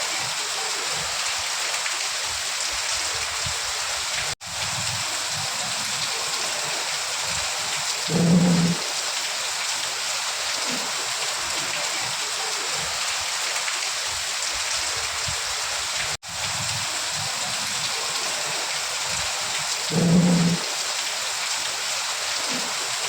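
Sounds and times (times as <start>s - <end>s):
steady rain: 0.0s - 23.0s.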